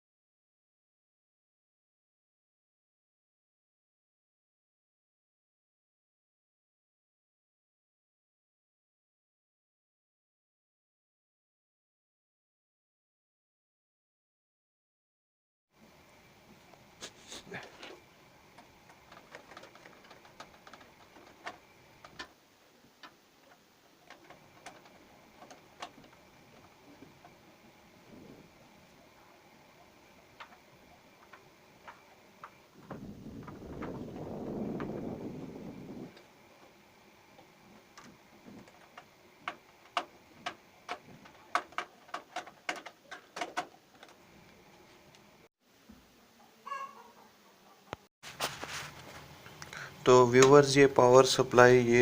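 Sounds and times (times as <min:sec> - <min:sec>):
faint steady hiss: 0:15.8 - 0:52.0
computer parts clicking and tapping: 0:17.6 - 0:22.4, 0:24.0 - 0:27.6, 0:30.3 - 0:34.0, 0:37.4 - 0:45.2.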